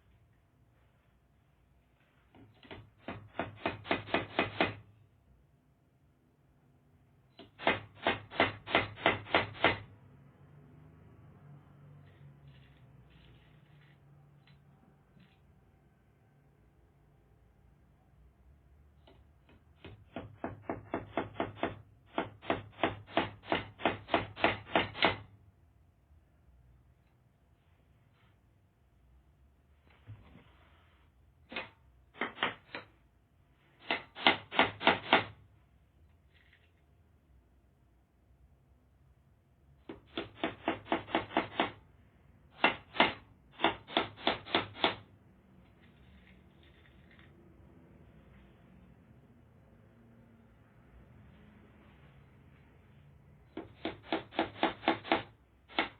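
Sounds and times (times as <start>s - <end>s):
hammer driving nails: 2.4s - 4.9s, 7.4s - 9.9s, 19.0s - 25.3s, 31.5s - 33.0s, 33.8s - 35.4s, 39.8s - 41.8s, 42.5s - 45.1s, 53.5s - 55.9s.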